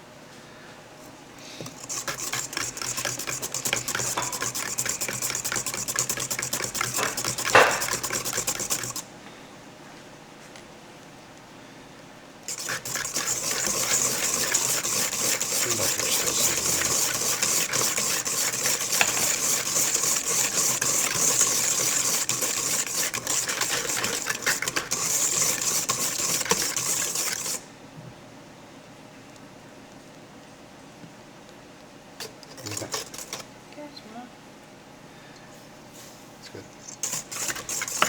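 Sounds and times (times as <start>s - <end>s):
electric mixer whipping: 1.6s - 9.0s, 12.5s - 27.6s, 32.5s - 33.4s, 37.0s - 38.0s.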